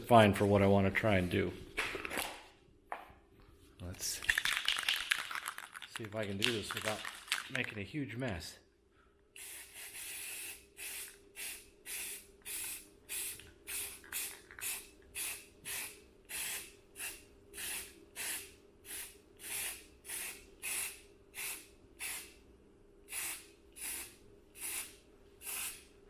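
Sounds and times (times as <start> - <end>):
spray paint can hissing: 4.3 - 5.8, 9.4 - 22.3, 23.1 - 25.9.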